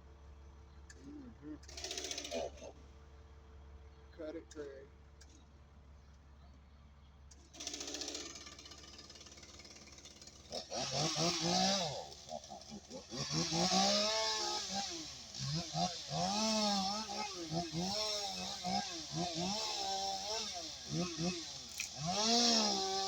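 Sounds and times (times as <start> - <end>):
chainsaw revving and cutting: 1.6 - 2.8, 7.4 - 23.0.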